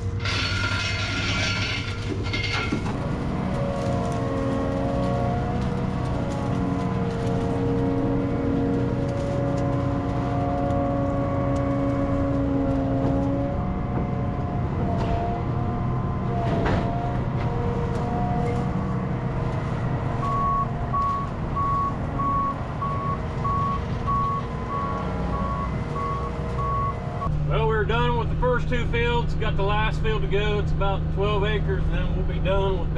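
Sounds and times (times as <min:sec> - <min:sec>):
machinery engine running: 0:00.0 - 0:32.9
back-up alarm beeping: 0:20.3 - 0:27.1.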